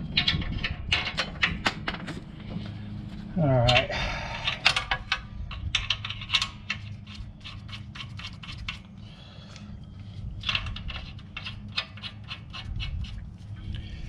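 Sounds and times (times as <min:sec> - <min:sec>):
metallic clicks and scrapes: 0:00.0 - 0:02.7, 0:03.6 - 0:09.6, 0:10.2 - 0:13.8
steady low hum: 0:00.0 - 0:14.0.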